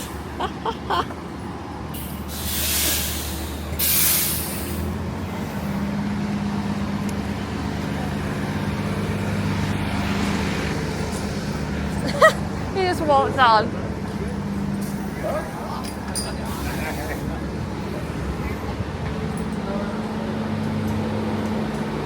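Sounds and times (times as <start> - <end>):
bus engine running: 0.0 - 22.0
air brake hiss: 2.0 - 4.9.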